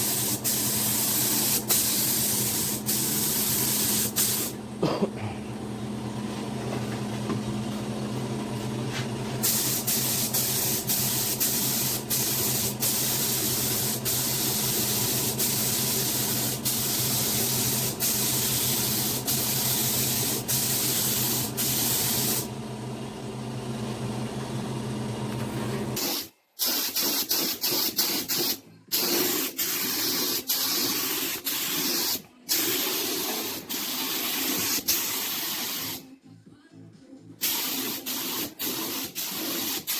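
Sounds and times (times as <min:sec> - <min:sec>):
spray paint hissing: 0:00.0 - 0:04.6, 0:09.4 - 0:22.5, 0:26.0 - 0:36.0, 0:37.4 - 0:39.9.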